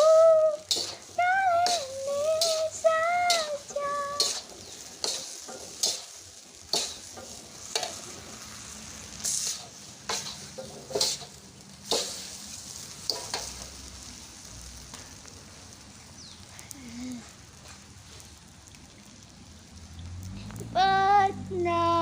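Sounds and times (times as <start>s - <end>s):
noodles sizzling in a wok: 0.0s - 22.0s
metal spatula scraping a pan: 0.6s - 8.5s, 9.2s - 12.3s.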